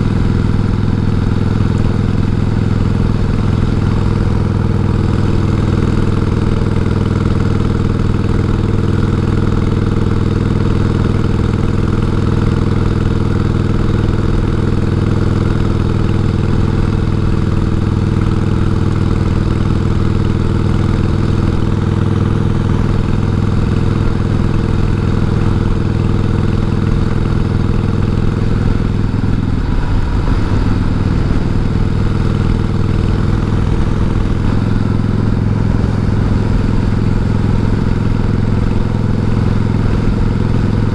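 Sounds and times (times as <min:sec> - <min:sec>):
motorcycle engine running: 0:00.0 - 0:40.9.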